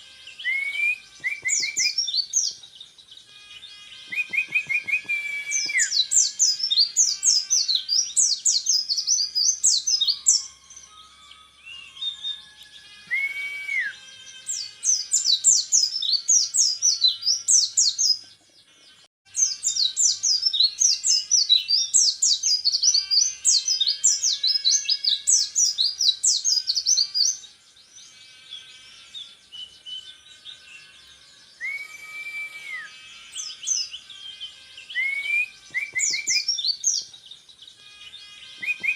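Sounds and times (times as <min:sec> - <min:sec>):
bird whistle: 0:00.0 - 0:02.6, 0:03.3 - 0:18.2, 0:31.6 - 0:37.0, 0:37.9 - 0:38.9.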